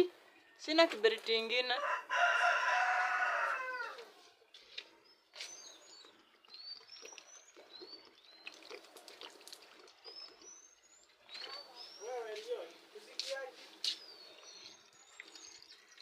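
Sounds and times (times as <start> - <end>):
small birds chirping: 0.0 - 16.0
rooster crowing: 1.8 - 4.1.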